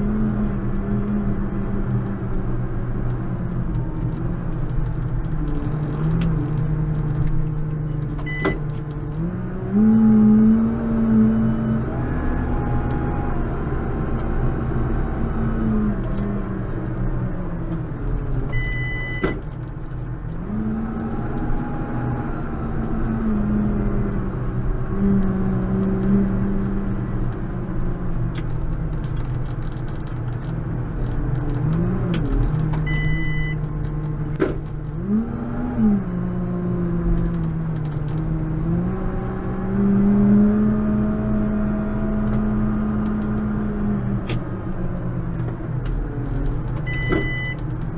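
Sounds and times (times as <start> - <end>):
high electronic beeps: 32.9 - 33.6.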